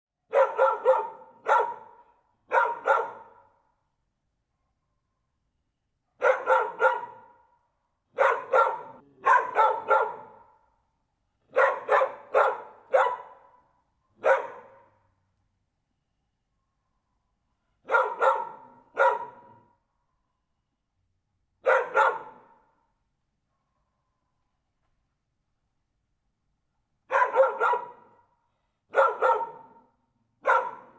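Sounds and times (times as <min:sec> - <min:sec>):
dog barking: 0:00.3 - 0:03.6, 0:06.1 - 0:10.7, 0:11.5 - 0:15.1, 0:17.8 - 0:19.8, 0:21.6 - 0:22.9, 0:27.1 - 0:30.9.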